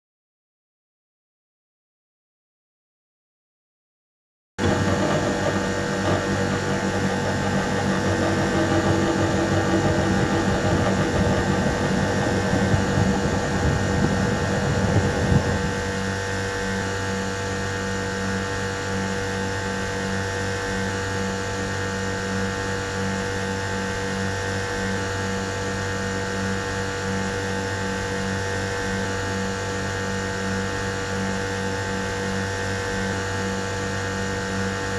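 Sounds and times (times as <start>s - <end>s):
air conditioner humming: 4.6s - 16.0s.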